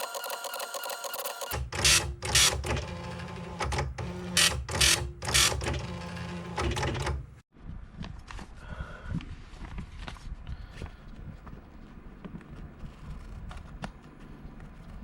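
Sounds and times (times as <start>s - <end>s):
dot-matrix printer printing: 0.0s - 7.4s
scattered printer clicking: 0.0s - 7.4s.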